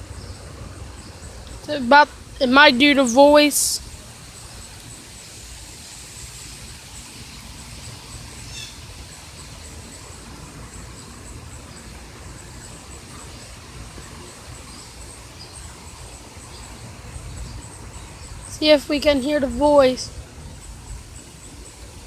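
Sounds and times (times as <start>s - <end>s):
insect chirping: 0.0s - 22.0s
steady low rumble: 0.0s - 22.0s.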